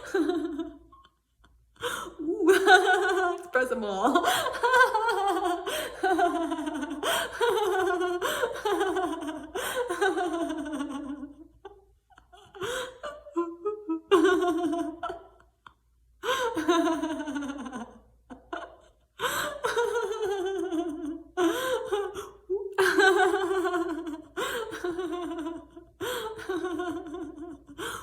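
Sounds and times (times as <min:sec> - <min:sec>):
woman laughing heartily: 0:00.0 - 0:01.2, 0:01.8 - 0:03.5, 0:04.1 - 0:28.0.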